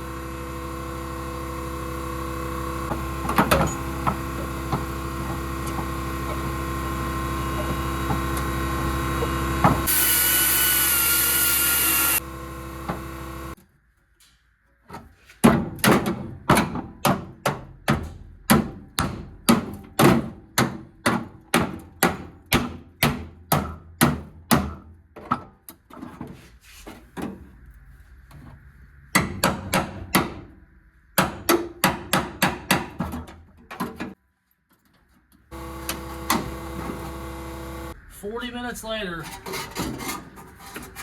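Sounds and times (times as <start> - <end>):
steady hum: 0.0 - 13.6, 35.5 - 39.3.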